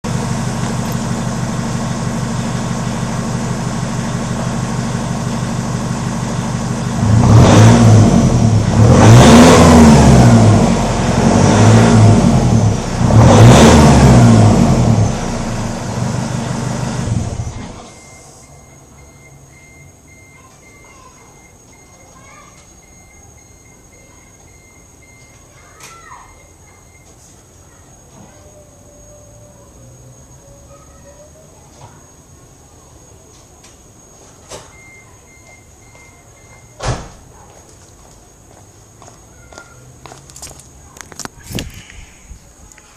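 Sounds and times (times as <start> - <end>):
pickup engine idling and revving: 0.0 - 18.0.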